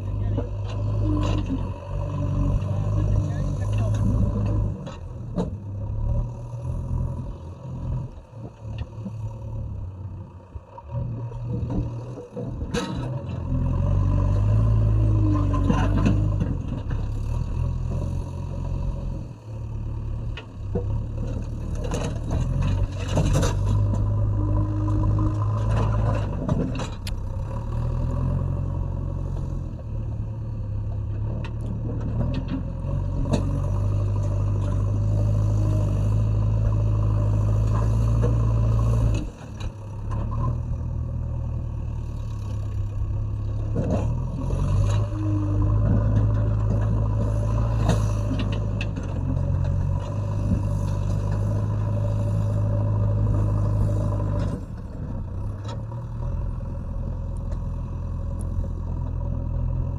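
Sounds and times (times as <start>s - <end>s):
diesel engine running under load: 0.0s - 59.9s.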